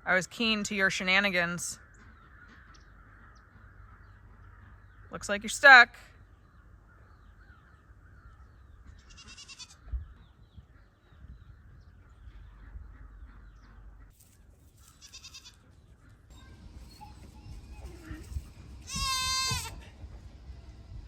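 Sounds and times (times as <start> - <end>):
wind rumble on microphone: 8.2 - 13.7, 17.0 - 21.0
goat bleating: 8.9 - 9.8, 14.9 - 15.6, 17.8 - 19.9.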